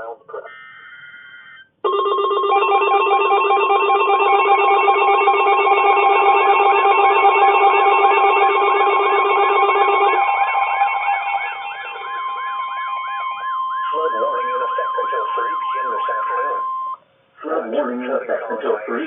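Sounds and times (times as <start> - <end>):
chord of steady alert tones: 0.5 - 17.1
warbling alert tone: 1.9 - 17.0.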